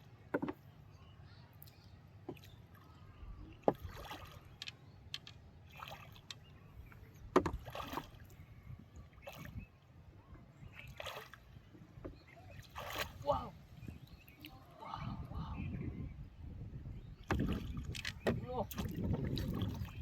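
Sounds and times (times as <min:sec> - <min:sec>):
water sloshing and splashing: 0:01.6 - 0:15.4, 0:17.2 - 0:20.0
sharp knocks and thumps: 0:07.3 - 0:07.8.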